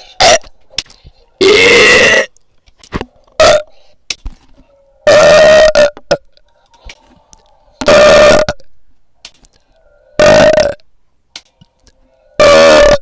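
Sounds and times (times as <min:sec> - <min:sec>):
person burping: 0:00.2 - 0:00.5, 0:01.4 - 0:02.3, 0:03.3 - 0:03.8, 0:05.1 - 0:06.3, 0:07.8 - 0:08.7, 0:10.2 - 0:10.8, 0:12.4 - 0:13.0.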